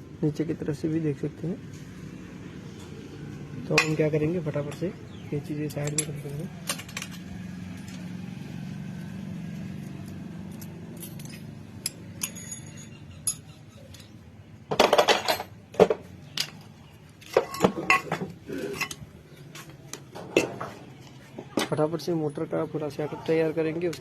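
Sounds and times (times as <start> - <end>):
metal parts clinking: 5.6 - 8.1, 9.7 - 15.6, 16.3 - 19.1
metal parts clattering: 5.7 - 8.0, 10.5 - 16.6, 17.2 - 19.1.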